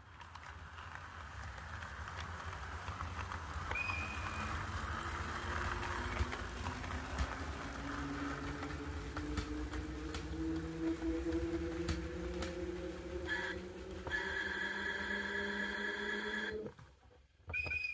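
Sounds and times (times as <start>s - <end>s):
train wheel clacks: 0.0s - 16.6s
electric train rumble: 0.0s - 16.8s
humming tone rising in pitch: 5.7s - 16.7s.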